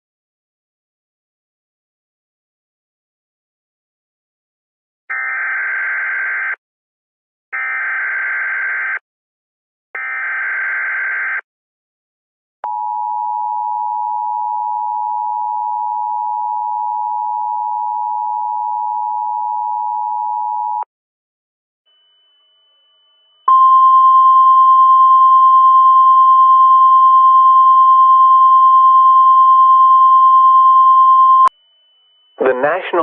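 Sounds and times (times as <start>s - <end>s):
warbling data tones: 21.9s - 24.9s, 31.0s - 33.0s
two-tone attention signal: 21.9s - 33.0s.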